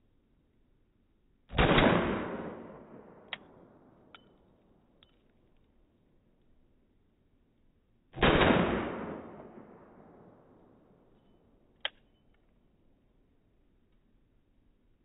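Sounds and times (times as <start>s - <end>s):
slowed pistol shot: 1.5s - 3.9s, 8.2s - 10.6s.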